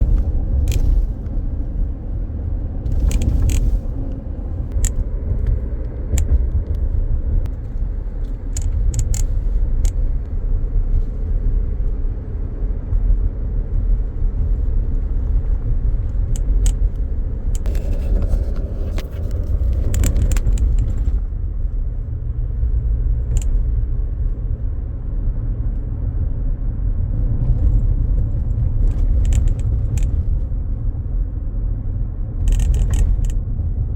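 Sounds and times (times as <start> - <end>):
car low rumble: 0.0 - 33.9
short clicks and rattles: 32.4 - 33.4.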